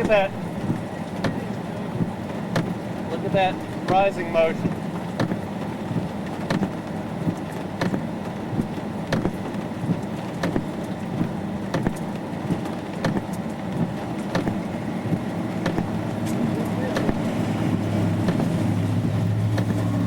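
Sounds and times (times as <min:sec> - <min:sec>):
raindrops ticking on vehicle: 0:00.0 - 0:20.0
steady low rumble: 0:00.0 - 0:20.0.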